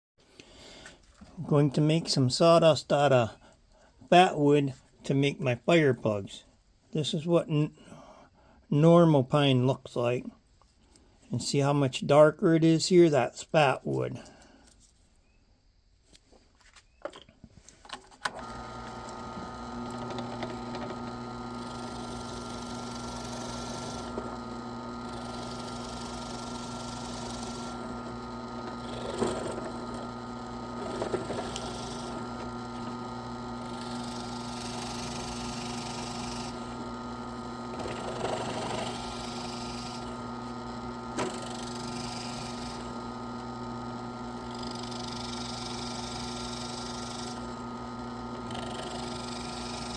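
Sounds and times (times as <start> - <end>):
electric power tool running: 18.3 - 49.9.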